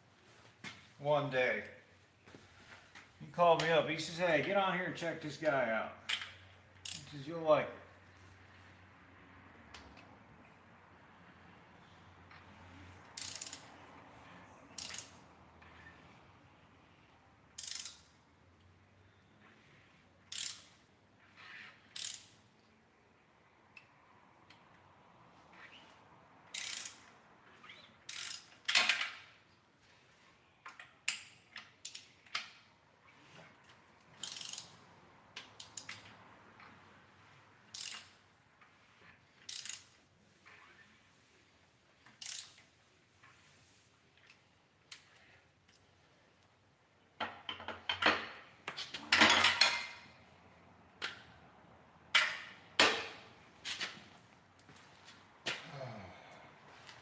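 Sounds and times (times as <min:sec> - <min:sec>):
hand ratchet clicking: 0:06.1 - 0:07.1, 0:13.2 - 0:13.7, 0:14.8 - 0:15.1, 0:17.6 - 0:18.1, 0:20.3 - 0:20.7, 0:21.4 - 0:22.4, 0:26.5 - 0:27.1, 0:28.0 - 0:28.9, 0:30.7 - 0:32.6, 0:34.2 - 0:34.8, 0:35.4 - 0:36.1, 0:37.7 - 0:38.2, 0:39.4 - 0:40.0, 0:42.1 - 0:42.6.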